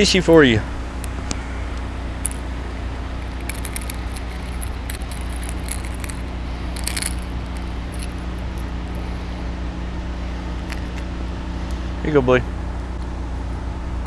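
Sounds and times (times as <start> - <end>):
boat motor hum: 0.0 - 14.0
light metallic jingling: 2.2 - 9.6, 10.2 - 11.1.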